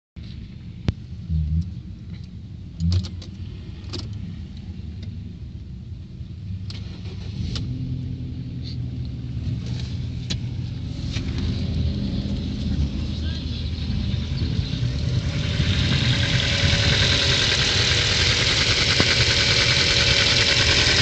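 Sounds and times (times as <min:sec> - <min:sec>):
petrol engine idling with knock: 0:11.1 - 0:21.0
sharp engine clicks: 0:13.6 - 0:21.0.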